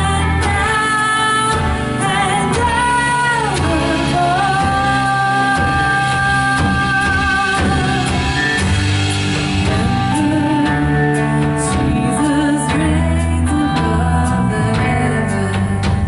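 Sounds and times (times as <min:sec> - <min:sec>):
bass line: 0:00.0 - 0:16.0
person singing: 0:00.0 - 0:16.0
sustained keys or guitar: 0:00.0 - 0:16.0
drum hits: 0:03.6 - 0:12.1.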